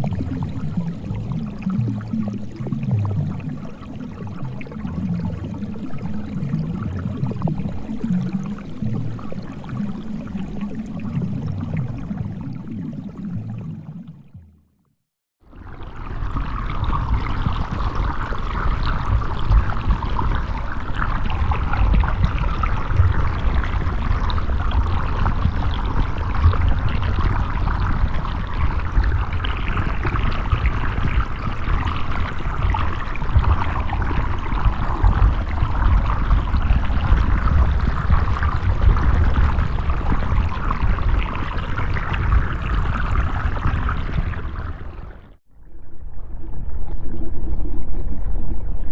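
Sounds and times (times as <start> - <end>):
deep underwater rumble: 0.0 - 14.8, 15.4 - 48.9
bubbling water hiss: 15.7 - 45.0.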